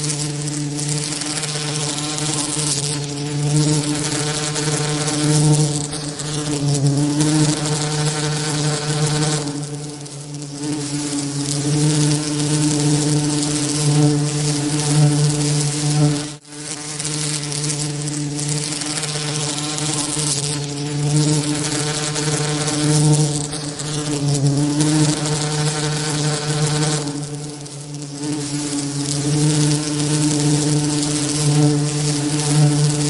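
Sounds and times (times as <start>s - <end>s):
bees buzzing: 0.0s - 33.0s
bright hiss: 0.0s - 33.0s.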